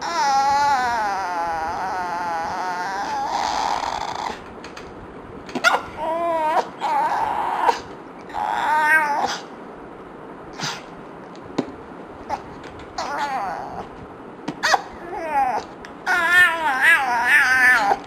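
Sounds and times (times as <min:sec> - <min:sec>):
dog whining and grumbling: 0:00.0 - 0:04.5, 0:05.6 - 0:09.6, 0:12.3 - 0:14.0, 0:14.6 - 0:18.0.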